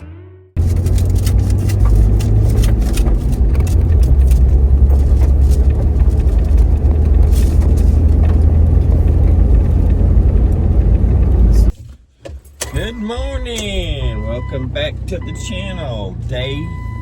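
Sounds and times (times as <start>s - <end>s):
vehicle driving rumble: 0.6s - 11.9s, 12.7s - 17.0s
rattles and clicks: 0.6s - 12.8s.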